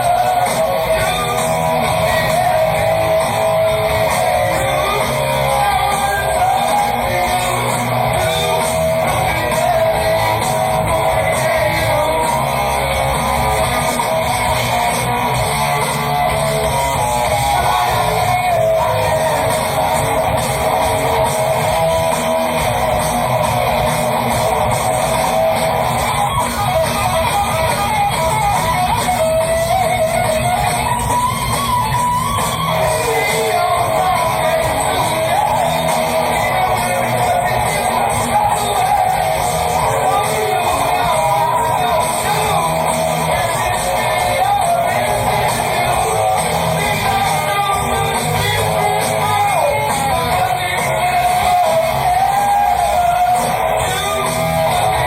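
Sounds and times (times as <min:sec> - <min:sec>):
drums: 0:00.0 - 0:55.0
electric guitar: 0:00.0 - 0:55.0
heavy rock band playing: 0:00.0 - 0:55.0.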